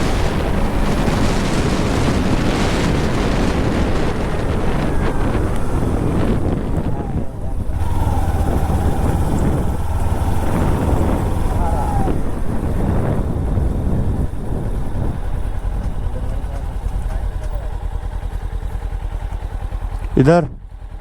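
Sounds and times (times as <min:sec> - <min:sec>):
wind rushing over microphone: 0:00.0 - 0:18.1
motorcycle engine running: 0:00.0 - 0:21.0.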